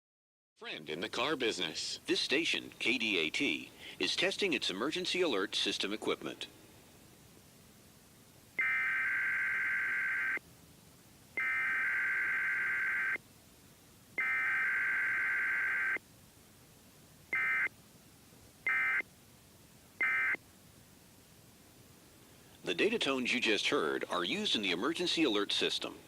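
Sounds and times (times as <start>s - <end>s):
digital data tone bursts: 11.4s - 13.2s, 14.2s - 16.0s.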